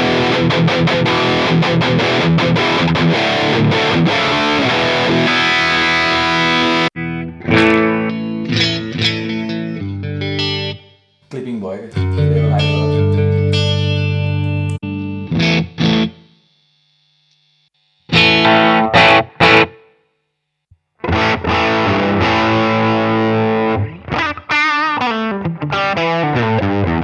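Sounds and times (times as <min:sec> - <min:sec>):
distorted electric guitar chords: 0:11.9 - 0:16.3, 0:18.1 - 0:19.8, 0:21.1 - 0:24.0.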